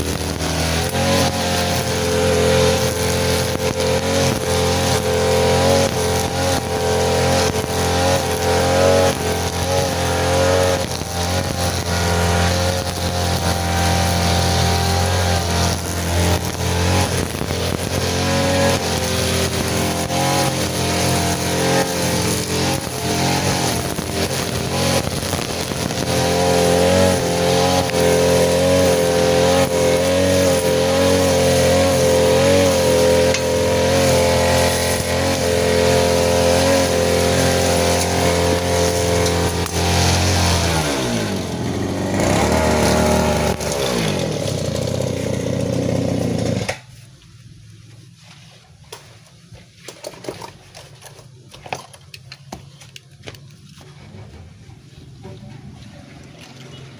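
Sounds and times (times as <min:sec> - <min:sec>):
sharp ticks and clatter from cutting: 0:00.0 - 0:41.4
grass cutter engine running: 0:00.0 - 0:46.9.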